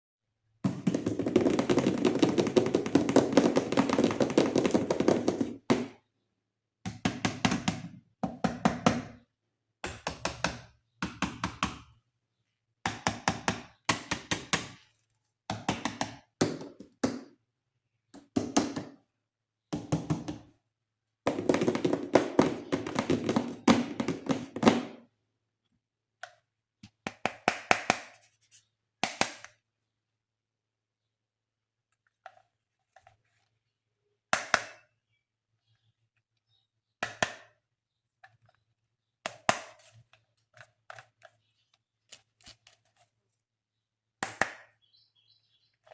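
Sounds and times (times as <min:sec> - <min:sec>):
hands tapping on toys: 0:00.6 - 0:06.0, 0:06.8 - 0:09.2, 0:09.8 - 0:11.9, 0:12.8 - 0:14.8, 0:15.5 - 0:17.4, 0:18.1 - 0:19.0, 0:19.7 - 0:20.5, 0:21.3 - 0:25.0, 0:26.2 - 0:28.1, 0:29.0 - 0:29.6, 0:34.3 - 0:34.8, 0:44.2 - 0:44.7.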